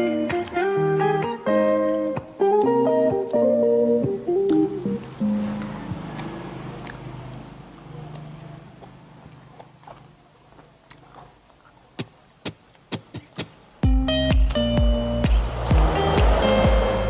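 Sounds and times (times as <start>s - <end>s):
guitar music: 0.0s - 8.4s, 12.9s - 17.0s
loud music: 13.8s - 17.0s.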